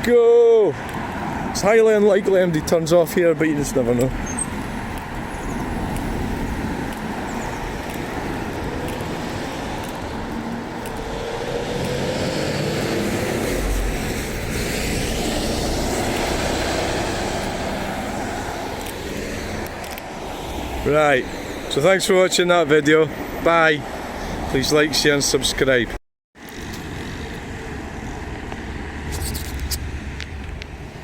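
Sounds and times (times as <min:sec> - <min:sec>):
cars driving past: 0:00.7 - 0:25.8, 0:26.4 - 0:31.0
loud vehicle passing: 0:00.8 - 0:21.9.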